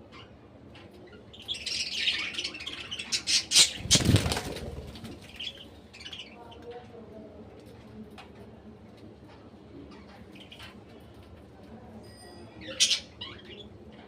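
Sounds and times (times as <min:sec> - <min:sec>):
budgerigars chattering: 0:01.4 - 0:04.1
wings flapping: 0:03.6 - 0:05.5.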